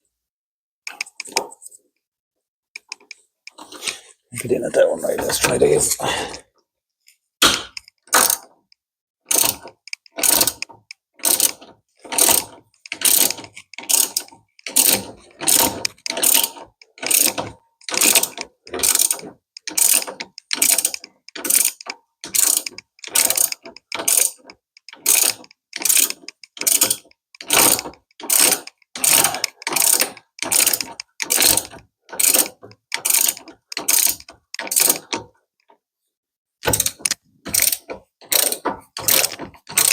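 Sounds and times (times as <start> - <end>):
ratchet wrench clicking: 7.7 - 8.5, 9.3 - 35.2, 36.6 - 39.9.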